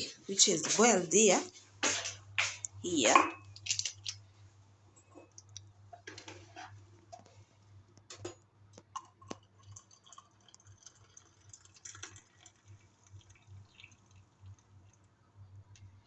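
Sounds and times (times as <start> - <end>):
low steady hum: 0.0 - 16.0
mug and tea things clicking: 9.0 - 12.6.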